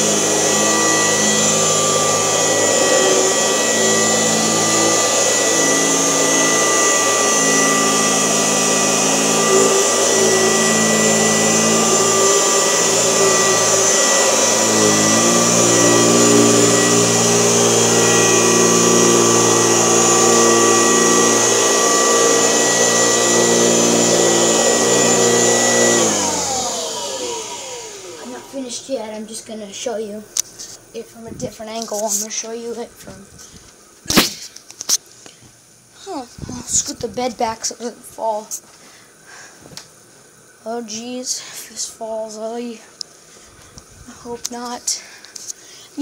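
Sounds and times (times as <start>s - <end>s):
motor winding down: 0.0s - 28.6s
vacuum cleaner running: 0.0s - 31.0s.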